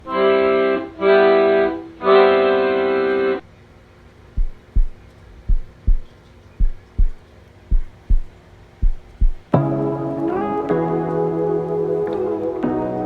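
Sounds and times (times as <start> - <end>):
organ-like keyboard chords: 0.0 - 3.6, 7.8 - 13.0
thumping bass beat: 4.4 - 9.6.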